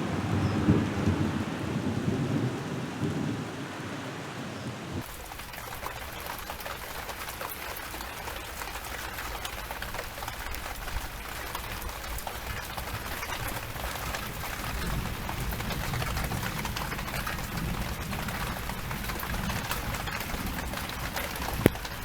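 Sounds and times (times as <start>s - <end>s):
low thunder rumble: 0.0s - 3.6s
heavy rain downpour: 0.0s - 22.0s
raindrops hitting near microphone: 0.0s - 22.0s.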